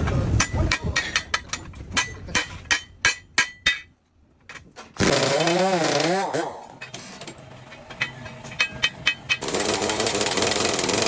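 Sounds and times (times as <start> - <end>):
hammer striking steel: 0.4 - 3.9, 6.0 - 10.5.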